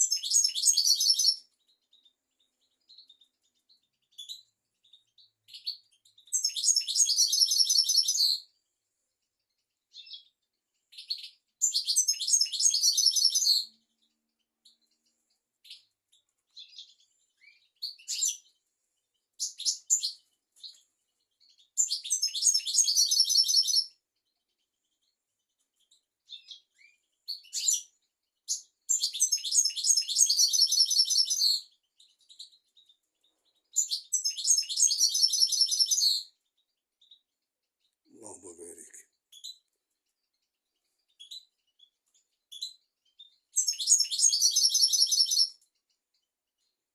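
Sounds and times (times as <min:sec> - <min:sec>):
bird twitters and call notes: 0:00.0 - 0:02.1, 0:02.8 - 0:08.4, 0:10.9 - 0:13.8, 0:14.7 - 0:18.5, 0:19.4 - 0:24.0, 0:25.8 - 0:33.0, 0:33.6 - 0:36.4, 0:40.4 - 0:45.8
bird singing trilled notes: 0:00.0 - 0:08.4, 0:09.9 - 0:13.9, 0:19.4 - 0:24.0, 0:25.8 - 0:39.7, 0:41.0 - 0:45.9.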